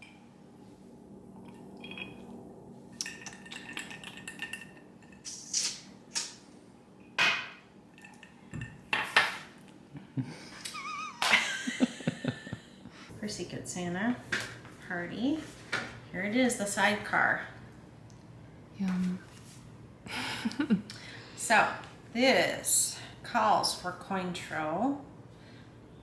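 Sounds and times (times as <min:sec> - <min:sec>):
glassware and bottles clinking: 0:01.4 - 0:02.4, 0:03.0 - 0:05.3.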